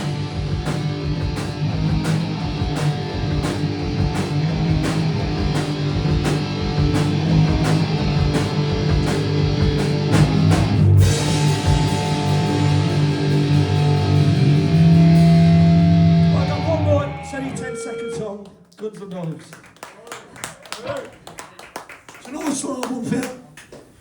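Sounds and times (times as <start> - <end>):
drums: 0.0 - 17.3
bass guitar: 0.0 - 18.3
distorted electric guitar: 0.0 - 18.4.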